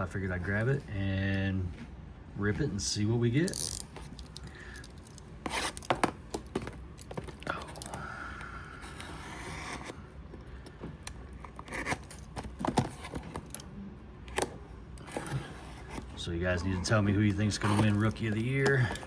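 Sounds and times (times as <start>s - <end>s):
cardboard boxes clicking and scraping: 3.9s - 7.9s, 11.3s - 13.7s, 14.3s - 19.0s
cardboard tearing: 5.4s - 7.9s, 11.4s - 13.6s, 14.3s - 19.0s.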